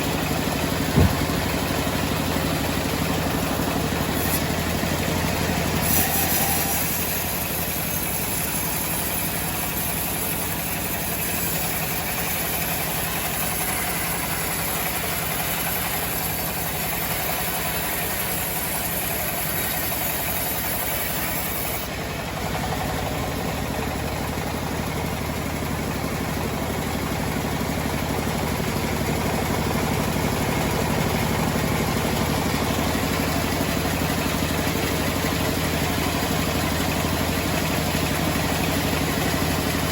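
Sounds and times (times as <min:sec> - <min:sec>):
sawmill droning: 0:00.0 - 0:39.9.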